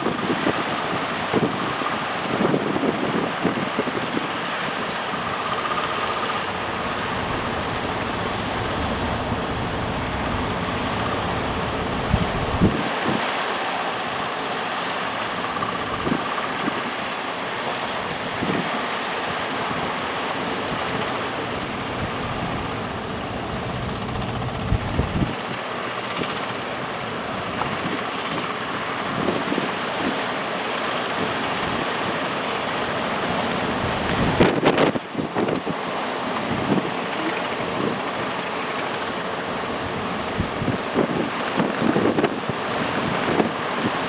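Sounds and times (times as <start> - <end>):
wind buffeting microphone: 0.0 - 13.3, 19.6 - 30.1, 39.7 - 44.0
breaking surf: 0.0 - 44.0
gusty thumps: 6.3 - 12.8, 21.8 - 25.4.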